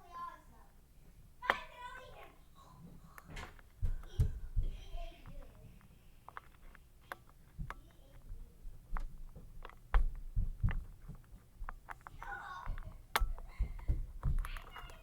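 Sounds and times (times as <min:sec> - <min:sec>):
footsteps pounding on floor above: 0:03.8 - 0:05.4, 0:08.6 - 0:15.0
lock pick clicks: 0:09.0 - 0:13.5.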